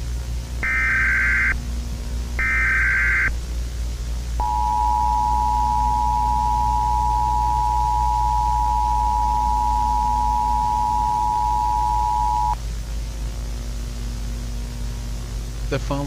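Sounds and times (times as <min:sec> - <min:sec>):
low hum and hiss: 0:00.0 - 0:16.0
two-tone alert signal: 0:04.4 - 0:12.6.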